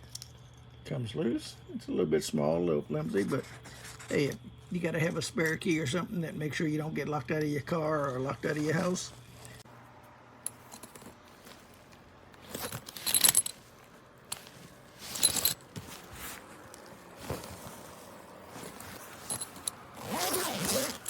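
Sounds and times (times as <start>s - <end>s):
key holder jingling: 12.5s - 13.7s.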